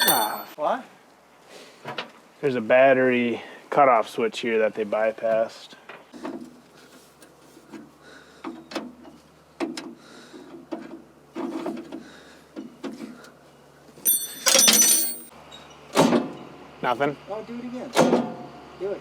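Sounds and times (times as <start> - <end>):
metal clanks and knocks: 0.0 - 0.6.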